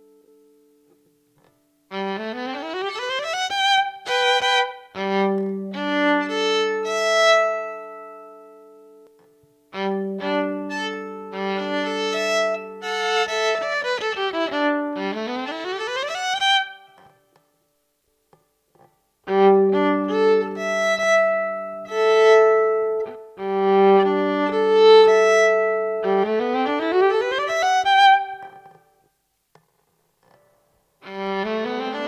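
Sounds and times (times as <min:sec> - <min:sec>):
electric violin playing: 0:01.9 - 0:09.0, 0:09.7 - 0:17.2, 0:19.2 - 0:28.8, 0:31.0 - 0:32.0.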